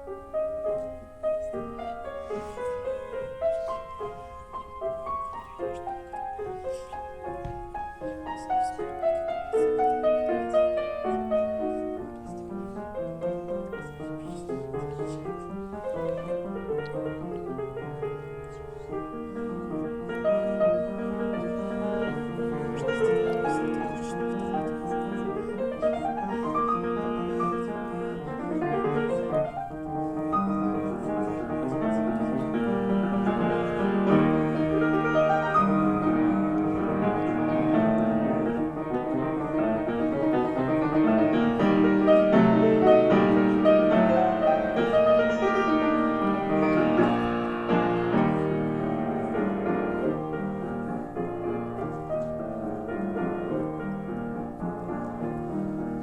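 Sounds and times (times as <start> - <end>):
solo piano classical piece: 0.0 - 56.0.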